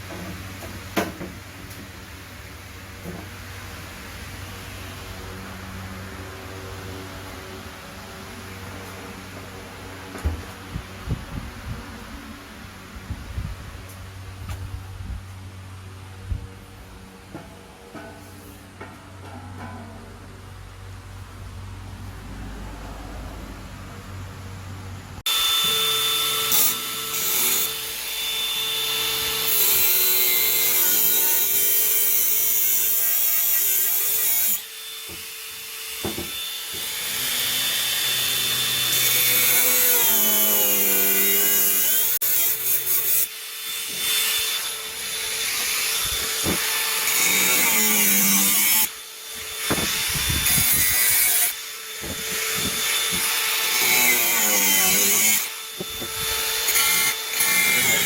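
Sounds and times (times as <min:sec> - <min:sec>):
electric power tool cutting wood: 0:25.2 - 0:58.0.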